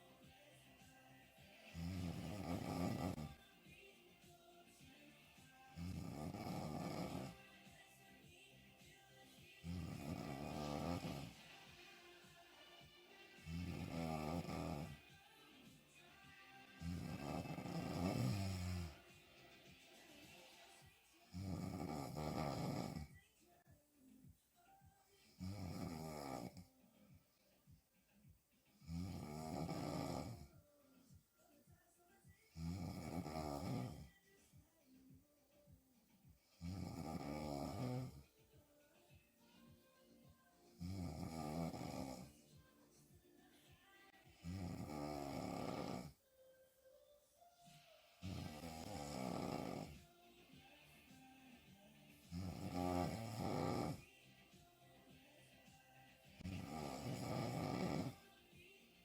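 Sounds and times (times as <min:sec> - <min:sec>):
woman snoring loudly: 0:01.6 - 0:03.4, 0:05.4 - 0:07.6, 0:09.5 - 0:12.4, 0:13.3 - 0:15.1, 0:16.6 - 0:19.1, 0:21.2 - 0:23.2, 0:25.2 - 0:26.7, 0:28.8 - 0:30.5, 0:32.5 - 0:34.1, 0:36.5 - 0:38.3, 0:40.8 - 0:42.4, 0:44.4 - 0:46.2, 0:48.2 - 0:50.2, 0:52.3 - 0:54.0, 0:56.4 - 0:58.3.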